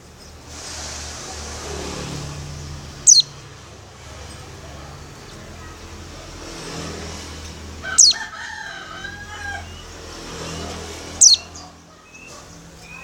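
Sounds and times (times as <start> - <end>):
rooster crowing: 7.8 - 10.0.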